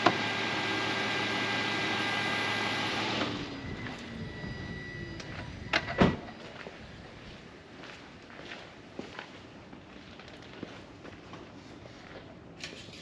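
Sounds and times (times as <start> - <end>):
car engine idling and winding down: 0.0 - 6.5.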